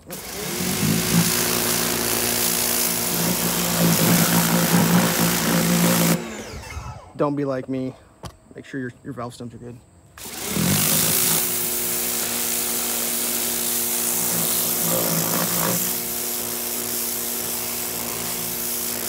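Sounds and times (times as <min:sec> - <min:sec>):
pressure washer motor hum: 0:00.0 - 0:07.2, 0:10.2 - 0:19.0
water jet hissing: 0:10.5 - 0:19.0.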